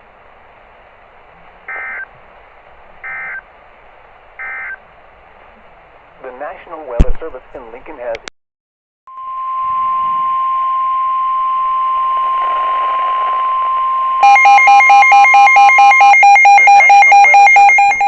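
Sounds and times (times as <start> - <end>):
static hiss: 0.0 - 8.1, 12.0 - 14.2
rapid beeping alarm: 1.7 - 2.0, 3.0 - 3.4, 4.4 - 4.8, 14.2 - 18.0
long steady alarm tone: 1.7 - 2.1, 3.0 - 3.4, 4.4 - 4.8, 9.1 - 18.0.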